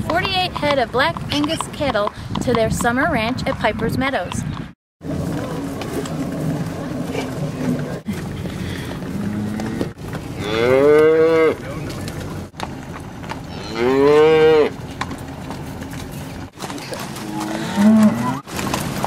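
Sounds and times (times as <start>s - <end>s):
cows mooing: 8.6s - 11.8s, 13.4s - 14.8s, 16.8s - 18.5s.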